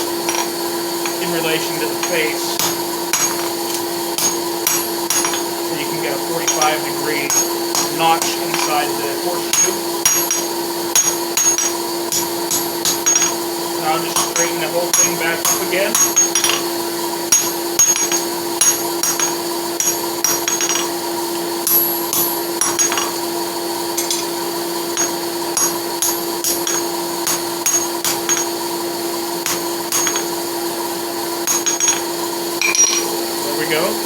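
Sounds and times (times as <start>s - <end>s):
forge blower humming: 0.0s - 34.0s
hammer striking anvil: 0.2s - 5.6s, 6.4s - 13.4s, 14.0s - 21.0s, 21.6s - 23.2s, 24.0s - 24.4s, 25.0s - 28.6s, 29.4s - 30.4s, 31.5s - 33.2s.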